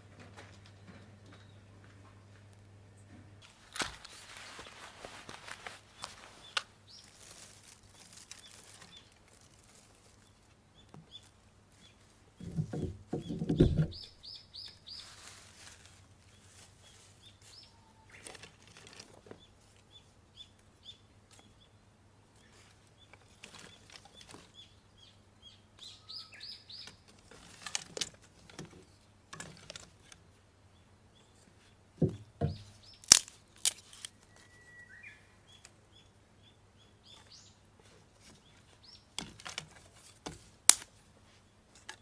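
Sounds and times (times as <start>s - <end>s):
small birds chirping: 4.0s - 28.0s, 29.8s - 33.2s, 33.9s - 40.3s
sharp cracks: 33.0s - 34.1s, 40.6s - 41.0s.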